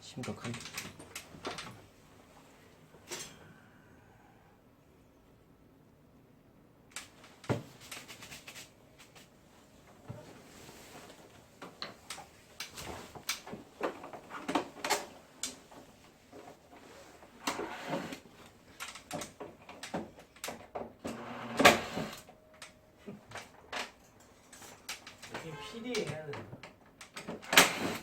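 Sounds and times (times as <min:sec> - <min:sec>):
plastic parts clicking and knocking: 0:17.4 - 0:21.2.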